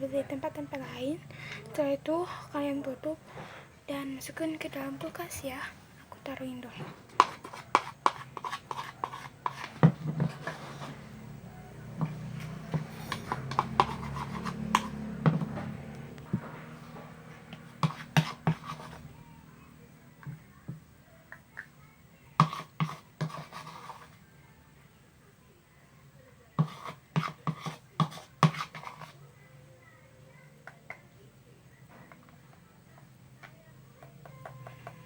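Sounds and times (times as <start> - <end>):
spoon scraping and tapping bowl: 6.8 - 11.0, 12.0 - 15.6, 17.5 - 19.0, 22.4 - 24.1, 26.6 - 29.2.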